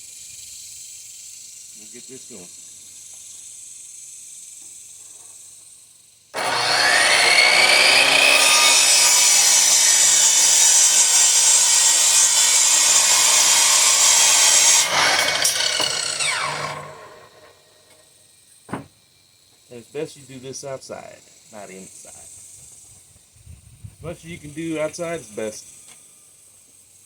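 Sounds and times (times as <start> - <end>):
electric power saw cutting wood: 6.4 - 18.0.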